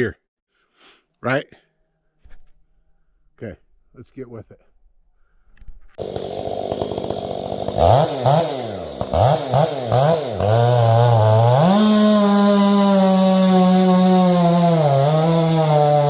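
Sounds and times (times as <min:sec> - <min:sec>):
chainsaw revving: 0:06.0 - 0:16.0.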